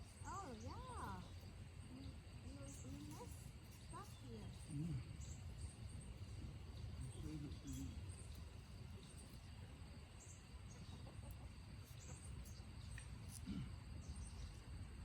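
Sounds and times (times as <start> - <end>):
chickens clucking: 10.6 - 12.4.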